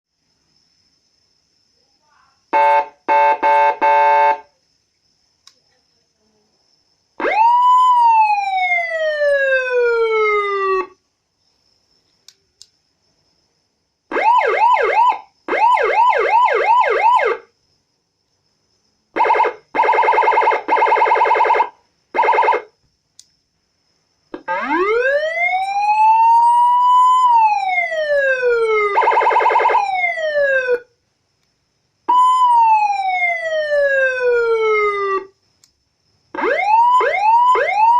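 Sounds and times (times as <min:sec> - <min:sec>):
electronic police siren: 0:07.2 - 0:11.0, 0:14.1 - 0:17.5, 0:19.2 - 0:22.7, 0:24.4 - 0:30.9, 0:32.1 - 0:35.3, 0:36.4 - 0:37.9.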